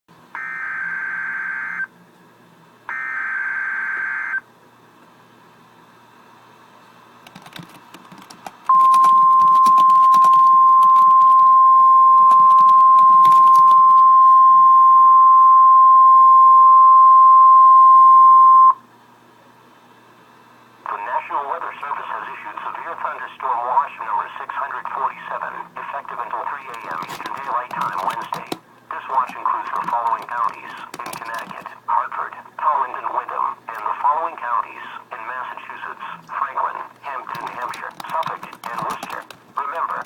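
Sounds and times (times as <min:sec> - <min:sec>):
steady warning alarm tone: 0:00.4 - 0:01.9, 0:02.9 - 0:04.4, 0:08.7 - 0:18.8
faint crackling static: 0:20.7 - 0:40.0.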